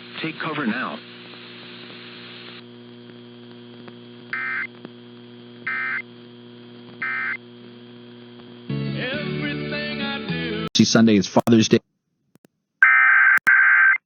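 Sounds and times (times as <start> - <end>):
steady electrical hum: 0.0 - 8.7.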